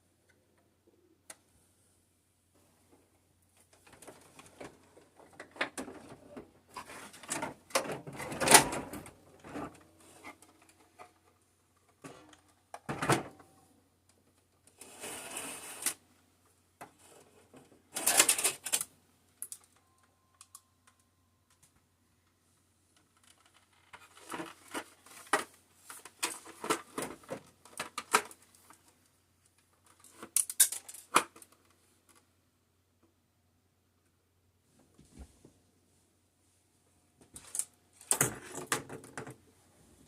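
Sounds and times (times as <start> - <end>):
plastic parts clicking and knocking: 16.8 - 21.9, 23.0 - 32.3, 37.2 - 39.4.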